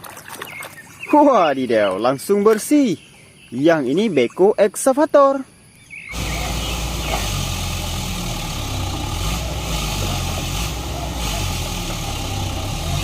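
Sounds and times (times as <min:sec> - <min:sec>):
excavator diesel engine rumbling: 0:06.1 - 0:13.0.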